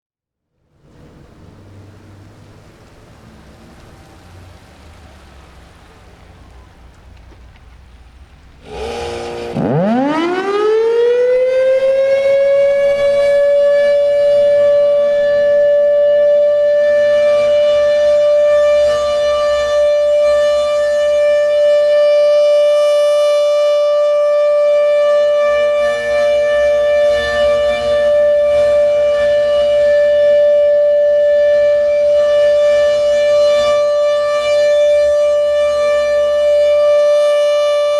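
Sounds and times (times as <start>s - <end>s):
civil defense siren winding up: 8.6s - 37.9s.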